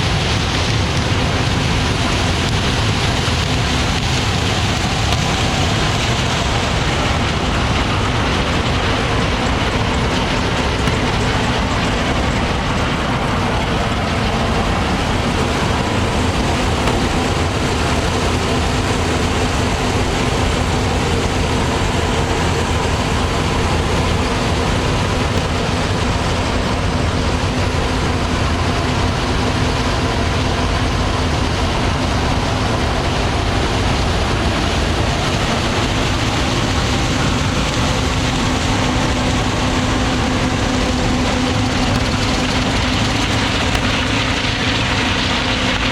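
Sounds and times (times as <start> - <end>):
heavy farm machinery engine drone: 0.0 - 45.9.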